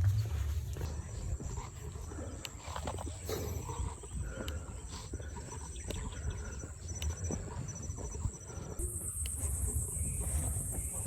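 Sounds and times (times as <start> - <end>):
low rumble: 0.0 - 2.3
high-pitched insect drone: 8.8 - 11.0.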